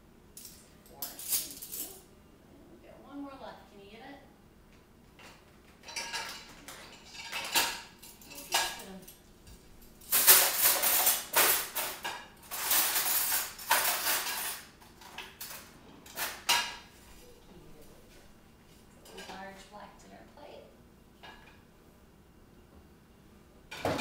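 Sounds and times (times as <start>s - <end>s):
dishes and cutlery clinking: 5.2s - 9.2s, 10.0s - 17.0s, 19.0s - 19.4s, 23.7s - 24.0s.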